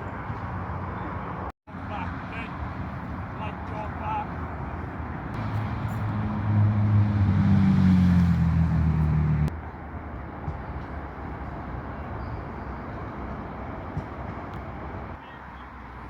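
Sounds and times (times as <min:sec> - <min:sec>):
outdoor background noise: 0:00.0 - 0:16.0
vehicle engine humming: 0:01.7 - 0:09.6.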